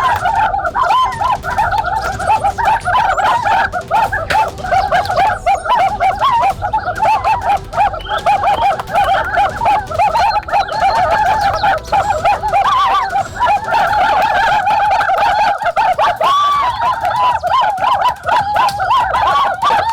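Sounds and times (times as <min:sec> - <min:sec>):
chorus of bird calls: 0:00.0 - 0:19.9.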